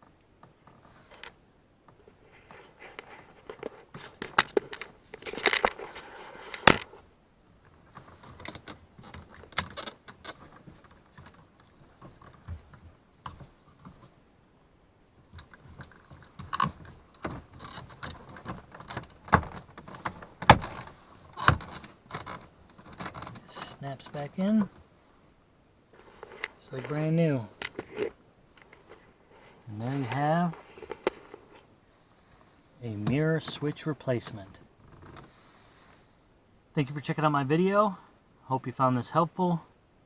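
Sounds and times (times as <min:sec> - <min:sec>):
plastic trim rattling and scraping: 0:02.8 - 0:07.0, 0:15.3 - 0:24.8, 0:26.0 - 0:31.6.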